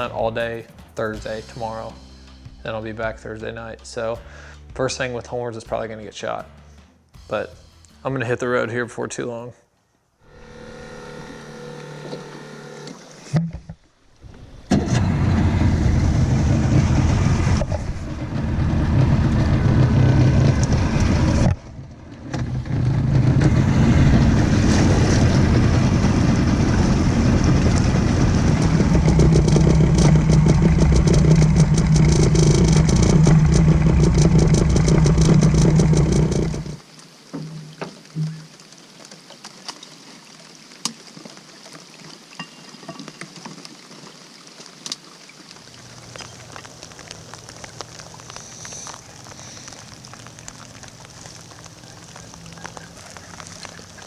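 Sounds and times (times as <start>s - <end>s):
road noise rumble: 14.2s - 36.8s, 45.7s - 54.0s
vehicle engine hum: 14.5s - 36.8s, 45.7s - 54.0s.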